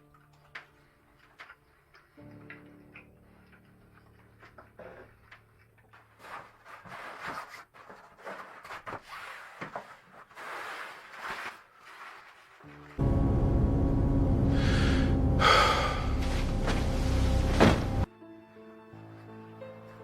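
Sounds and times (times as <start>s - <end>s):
rustling and handling noise: 0.0s - 13.0s.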